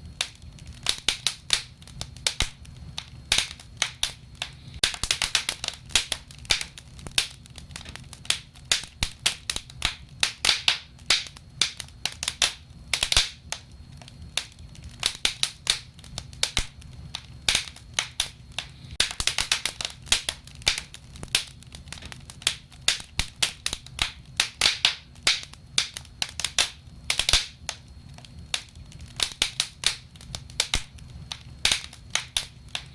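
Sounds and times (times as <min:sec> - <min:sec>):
wood fire crackling and popping: 0:00.0 - 0:32.9.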